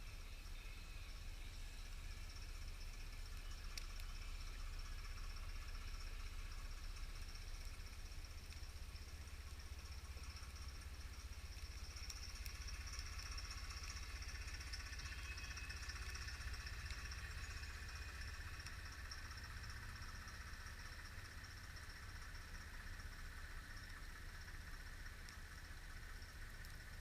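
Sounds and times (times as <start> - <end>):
faint crackles: 0.0 - 27.0
bonfire flames rumbling: 0.1 - 27.0.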